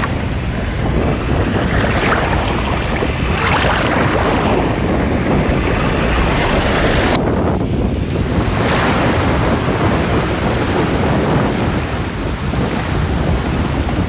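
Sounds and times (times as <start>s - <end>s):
surf washing ashore: 0.0s - 14.0s
wind buffeting microphone: 0.0s - 14.0s.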